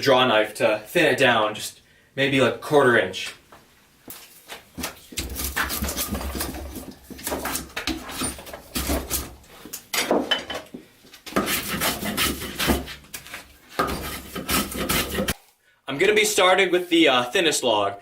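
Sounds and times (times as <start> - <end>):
drawknife scraping wood: 5.2 - 9.5, 11.3 - 15.4.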